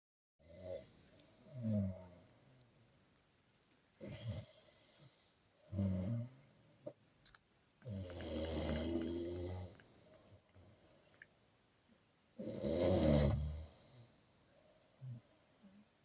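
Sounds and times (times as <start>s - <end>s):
person snoring: 7.8s - 9.8s, 12.4s - 13.9s.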